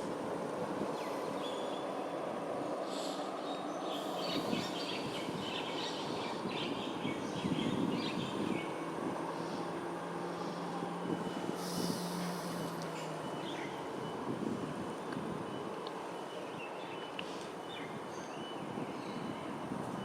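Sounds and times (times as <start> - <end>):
distant traffic rumble: 0.0 - 20.0.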